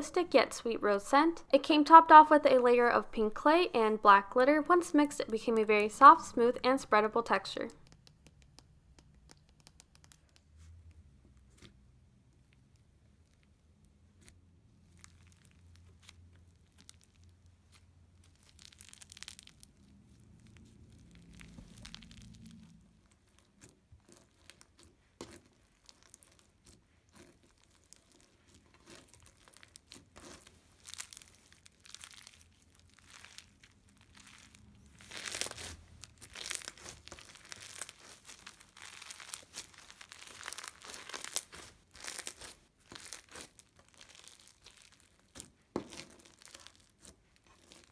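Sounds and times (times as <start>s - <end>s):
slime crackling and popping: 12.5s - 47.9s.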